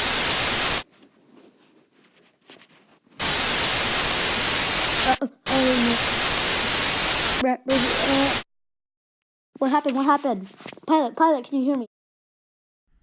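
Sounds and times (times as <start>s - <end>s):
radio static hiss: 0.0s - 0.8s, 3.2s - 8.4s.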